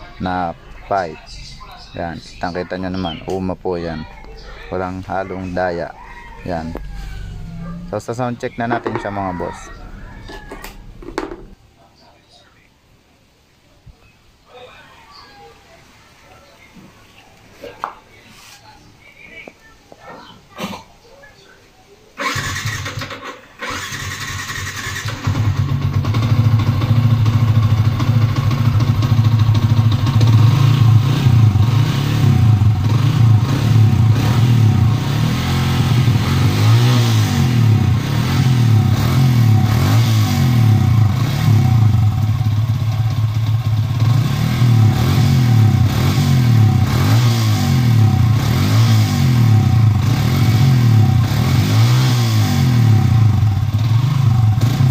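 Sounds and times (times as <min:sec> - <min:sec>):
motorcycle engine revving: 0:04.3 - 0:11.6, 0:22.2 - 0:54.9
motorcycle engine starting: 0:04.3 - 0:11.6, 0:22.2 - 0:54.9.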